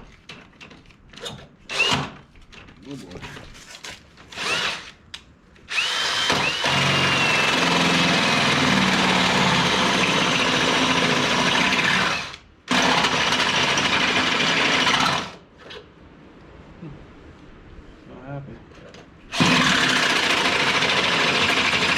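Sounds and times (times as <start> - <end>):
power drill drilling metal: 1.7 - 2.2, 4.3 - 5.0, 5.7 - 15.4, 19.3 - 21.9.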